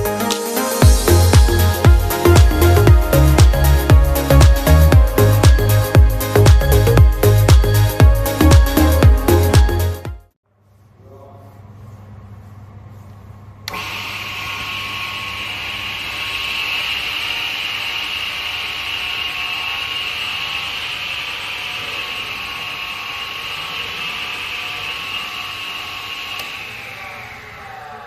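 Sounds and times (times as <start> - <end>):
saw motor hum: 0.0 - 10.0, 13.7 - 28.0
spinning saw blade whir: 13.7 - 28.0.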